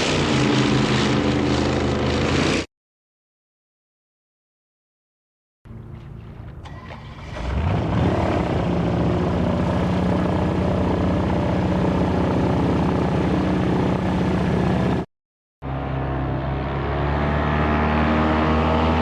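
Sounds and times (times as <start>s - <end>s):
airboat engine and propeller: 0.0s - 2.6s, 5.7s - 15.1s.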